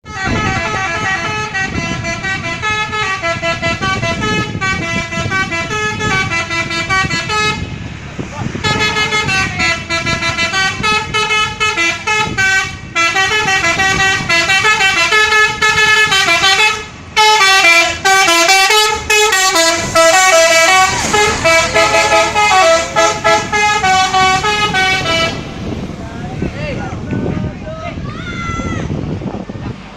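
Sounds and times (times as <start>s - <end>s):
musical air horn tune: 0.0s - 7.7s, 8.6s - 25.5s.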